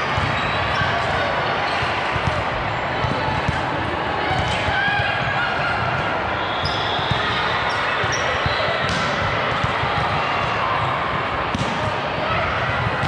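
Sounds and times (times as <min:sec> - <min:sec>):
crowd chatter: 0:00.0 - 0:13.0
sneakers squeaking: 0:00.2 - 0:02.3, 0:05.9 - 0:10.1
balls thudding on hardwood court: 0:08.8 - 0:10.2, 0:11.5 - 0:11.9.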